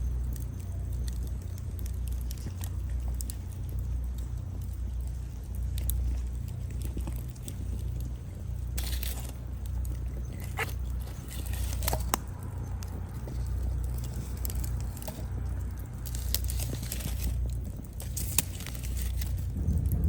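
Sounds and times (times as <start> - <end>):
low steady rumble: 0.0 - 20.0
wood fire crackling: 0.0 - 20.0.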